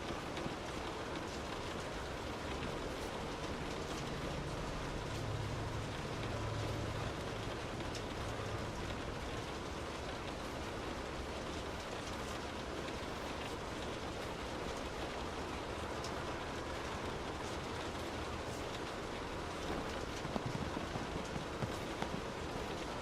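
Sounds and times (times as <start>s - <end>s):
rain heard from indoors: 0.0s - 23.0s.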